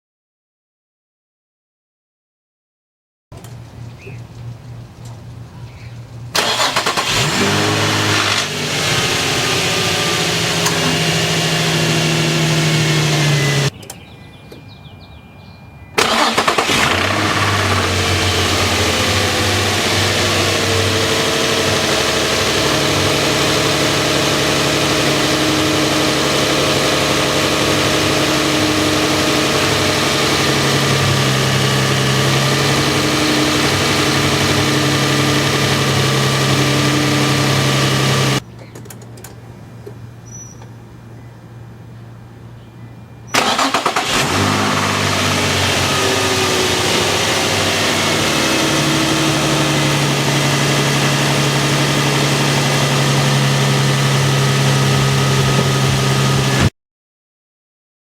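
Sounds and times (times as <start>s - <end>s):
car engine idling: 6.3s - 14.0s, 16.0s - 40.8s, 43.3s - 56.7s
car engine starting with clanking: 6.3s - 14.8s, 16.0s - 40.8s, 43.3s - 56.7s.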